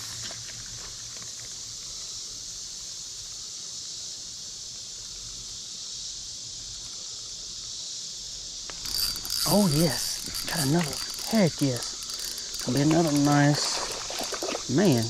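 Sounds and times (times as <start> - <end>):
insects droning: 0.0 - 15.0.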